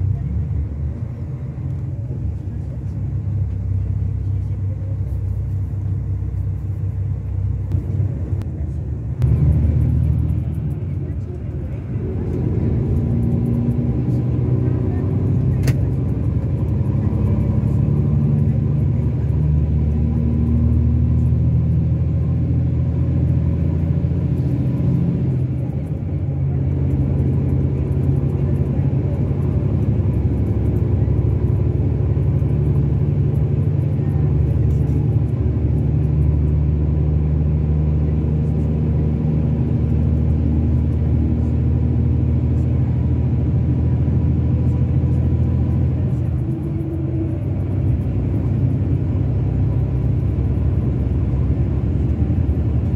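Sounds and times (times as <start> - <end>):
coach diesel engine droning: 0.0 - 52.9.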